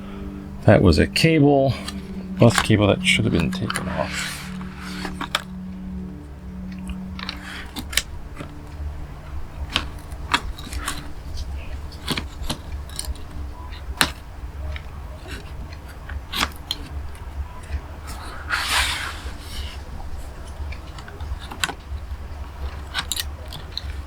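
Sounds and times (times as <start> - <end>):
cables and connectors clicking: 0.0 - 24.0
low hum: 0.0 - 24.0
rustling scrape: 1.7 - 8.8, 18.0 - 21.8.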